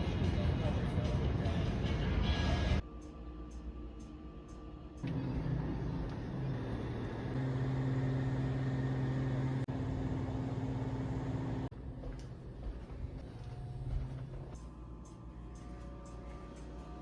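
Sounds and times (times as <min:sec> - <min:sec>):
car engine hum: 0:05.0 - 0:12.8
road noise: 0:05.0 - 0:13.2.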